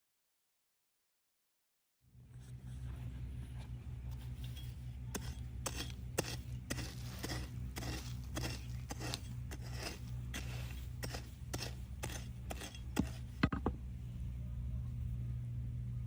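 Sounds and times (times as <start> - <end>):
steady low hum: 2.1 - 16.0
hands clicking and scraping tools: 4.2 - 13.6.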